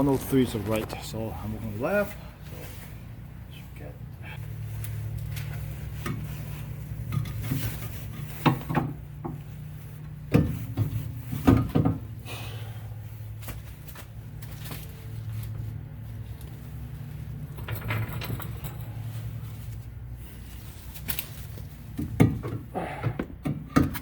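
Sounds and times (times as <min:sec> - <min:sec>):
metal parts clunking: 0:17.3 - 0:19.4.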